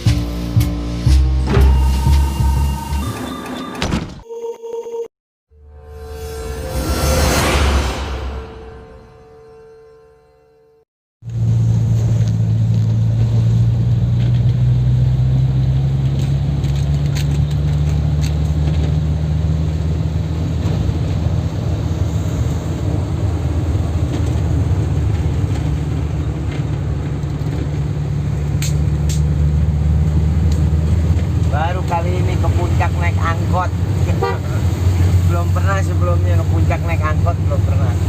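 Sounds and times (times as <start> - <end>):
vehicle engine humming: 11.2 - 38.0.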